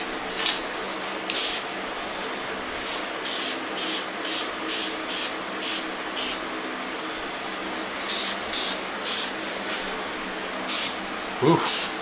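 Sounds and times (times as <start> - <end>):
spray can hissing bursts: 3.3 - 6.4, 8.1 - 9.4, 10.7 - 11.0, 11.7 - 12.0.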